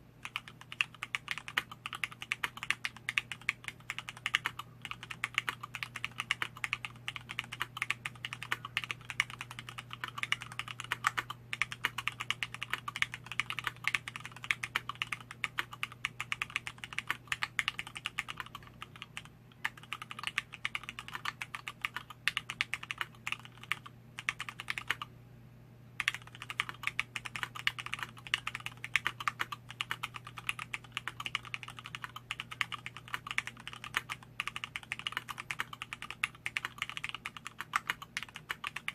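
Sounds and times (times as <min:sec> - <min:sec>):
mechanical keyboard typing: 0:00.2 - 0:25.1, 0:26.0 - 0:38.9.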